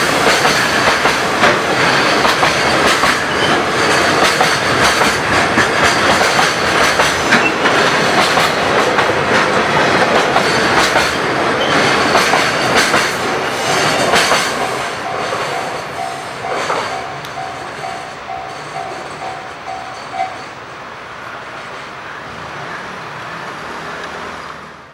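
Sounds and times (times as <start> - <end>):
freight train wheels clattering: 0.0 - 20.6
level crossing alarm ringing: 13.7 - 20.5.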